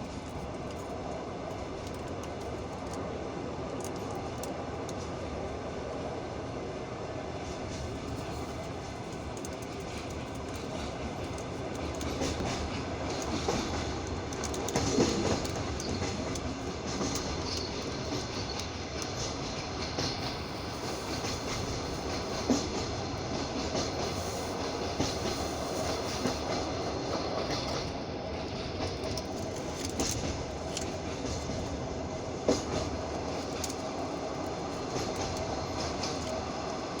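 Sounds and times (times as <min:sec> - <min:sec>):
train wheels rumbling: 0:00.0 - 0:37.0
wheels knocking on rail joints: 0:09.5 - 0:31.8.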